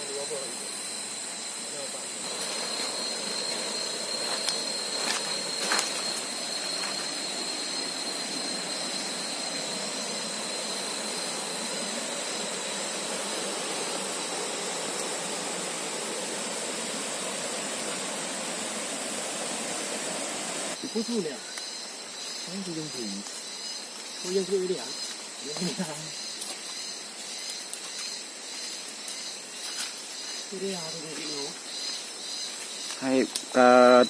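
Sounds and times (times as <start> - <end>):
thin high whine: 0.0 - 21.6
falling water rushing: 10.5 - 20.9.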